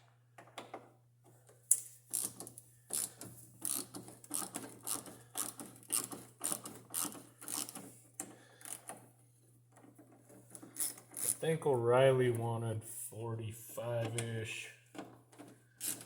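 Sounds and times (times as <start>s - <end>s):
hand ratchet clicking: 1.7s - 9.0s, 10.5s - 11.4s, 15.8s - 16.0s.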